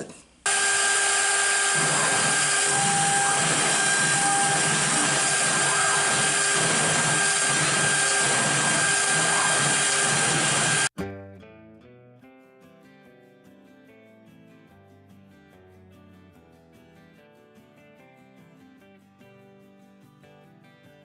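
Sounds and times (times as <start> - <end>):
router spindle carving wood: 0.5 - 10.9.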